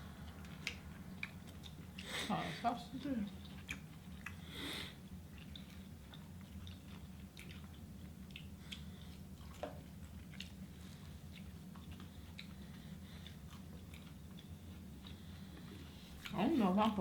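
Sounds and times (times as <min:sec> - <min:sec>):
steady low hum: 0:00.0 - 0:17.0
chewing mouth clicks and smacks: 0:00.1 - 0:02.2, 0:03.0 - 0:04.4, 0:05.2 - 0:17.0.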